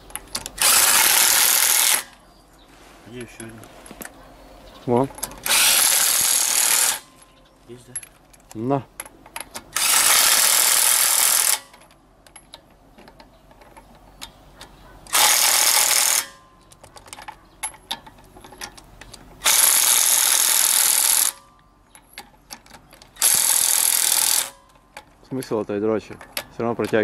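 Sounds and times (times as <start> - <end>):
impact wrench on wheel nuts: 0.0 - 2.2, 5.1 - 7.4, 8.0 - 27.0
small metallic clicks: 5.0 - 27.0.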